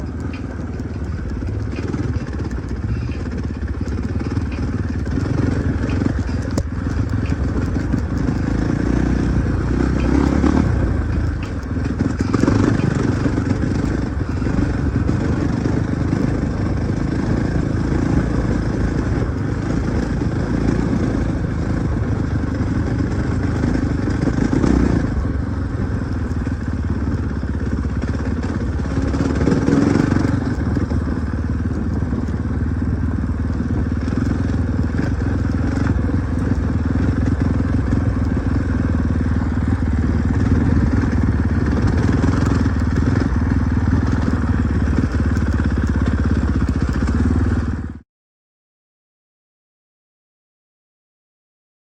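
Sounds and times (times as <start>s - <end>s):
dirt bike engine running: 0.0s - 48.0s.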